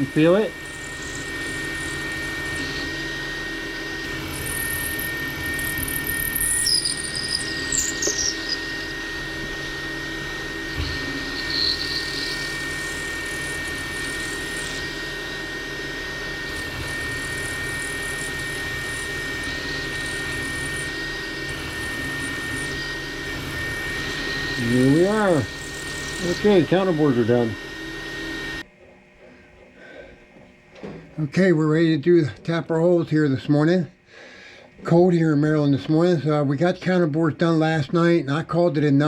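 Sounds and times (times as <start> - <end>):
cutter squealing: 0.0 - 28.7
milling machine high whine: 0.0 - 39.0.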